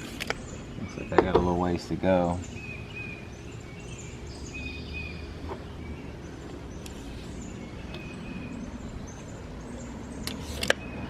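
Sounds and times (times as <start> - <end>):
birds chirping: 0.0 - 11.0
low outdoor rumble: 0.0 - 11.0.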